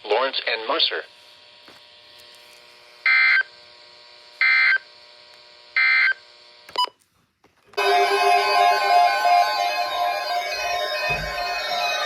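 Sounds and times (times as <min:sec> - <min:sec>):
steady radio hiss: 0:00.0 - 0:02.3.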